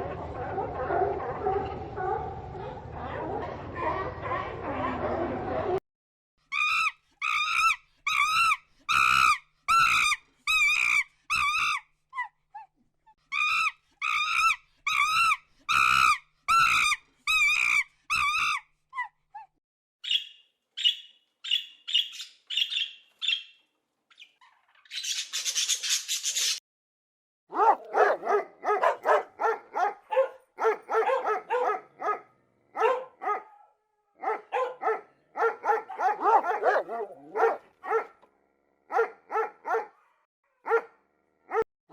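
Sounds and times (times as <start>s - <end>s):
low animal barks: 27.5s - 38.2s, 38.9s - 41.6s.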